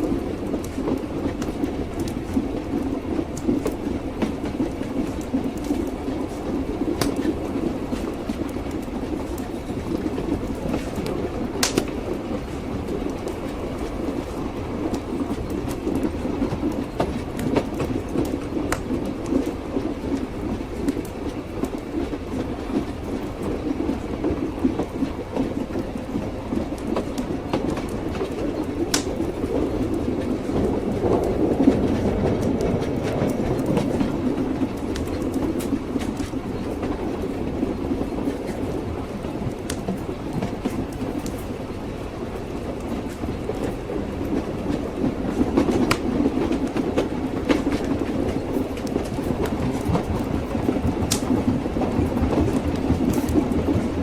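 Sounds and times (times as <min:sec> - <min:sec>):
train carriage rumble: 0:00.0 - 0:54.0
wheels clacking over rail joints: 0:00.0 - 0:54.0.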